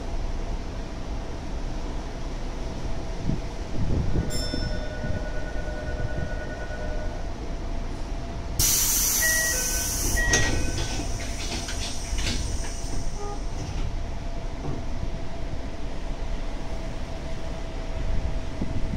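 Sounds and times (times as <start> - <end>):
low train hum: 0.0 - 18.9
loud air hiss of train doors: 8.6 - 14.0
door chime beeps: 9.2 - 10.9.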